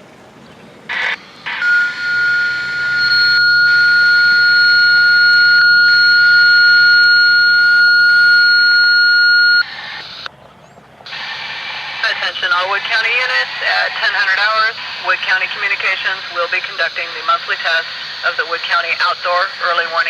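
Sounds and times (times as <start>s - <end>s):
short bursts of radio noise: 0.9s - 10.3s, 11.1s - 20.0s
scanner alert beep: 1.5s - 9.7s.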